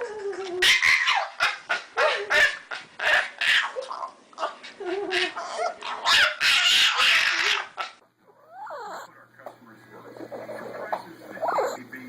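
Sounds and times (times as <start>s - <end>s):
dog yipping and barking: 0.0s - 9.1s.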